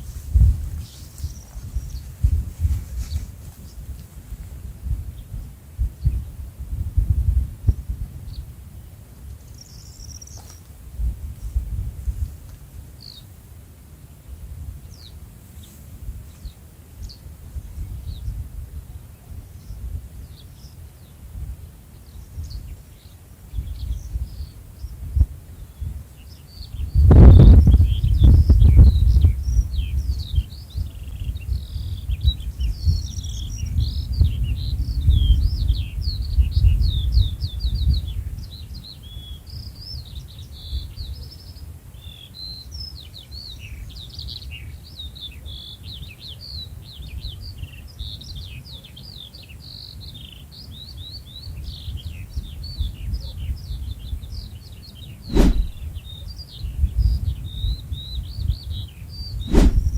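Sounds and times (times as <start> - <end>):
small birds chirping in chorus: 0.0 - 6.6, 8.2 - 59.9
low rumble: 55.3 - 55.9, 59.4 - 59.9.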